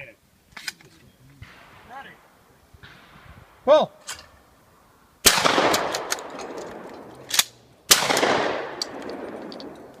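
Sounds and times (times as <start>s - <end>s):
shotgun shots echoing: 5.2s - 9.9s.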